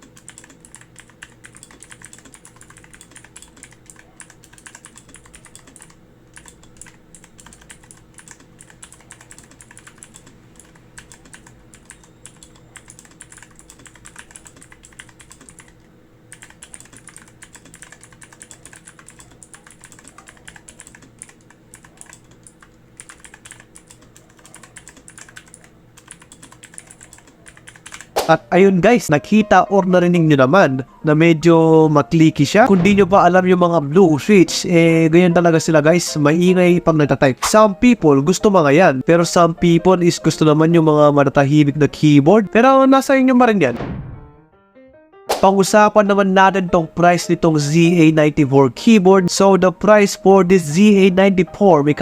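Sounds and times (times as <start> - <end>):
clicky keyboard typing: 0.0 - 28.4.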